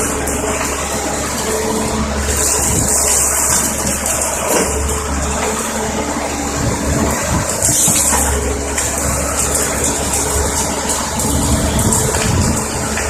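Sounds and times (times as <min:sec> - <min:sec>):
excavator diesel engine running: 0:00.0 - 0:13.0
hydraulic rush: 0:00.0 - 0:13.0.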